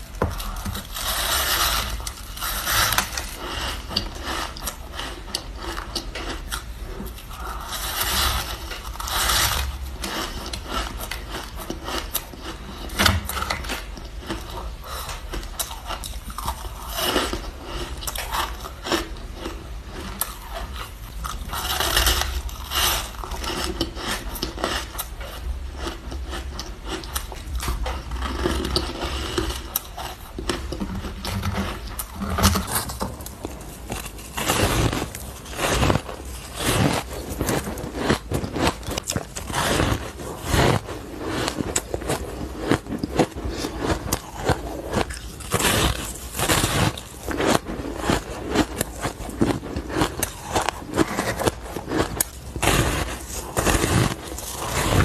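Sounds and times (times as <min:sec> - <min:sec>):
ice being crunched: 0:30.9 - 0:55.0.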